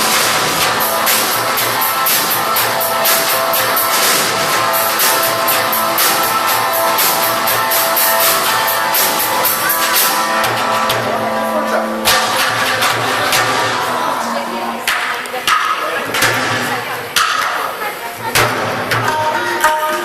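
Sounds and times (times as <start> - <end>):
rock music with drums and guitar: 0.0 - 14.0
person singing: 10.8 - 15.1.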